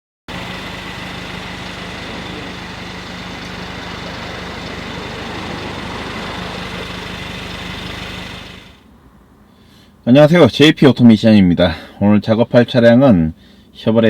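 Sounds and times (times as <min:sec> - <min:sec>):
faint high steady tones: 0:00.3 - 0:08.8
car engine idling: 0:00.3 - 0:09.4.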